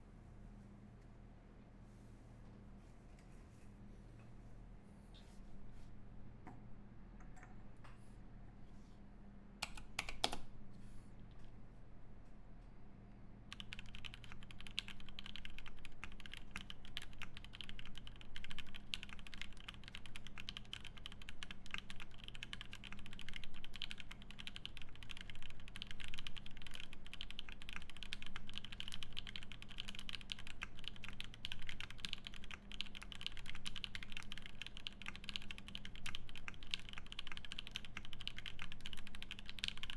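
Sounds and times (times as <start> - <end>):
mechanical keyboard typing: 9.6 - 10.5, 13.5 - 39.9
sharp keyboard clicks: 9.6 - 10.5, 13.5 - 39.9.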